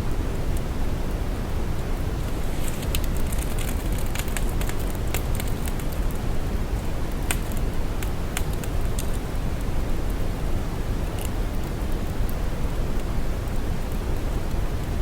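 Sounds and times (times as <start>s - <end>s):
soft crackles: 2.2s - 6.3s.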